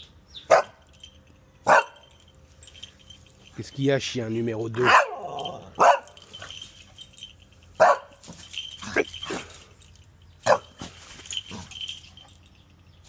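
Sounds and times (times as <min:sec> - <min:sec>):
dog barking: 0:00.5 - 0:00.8, 0:01.6 - 0:02.1, 0:04.8 - 0:06.2, 0:07.8 - 0:08.2, 0:10.4 - 0:10.8.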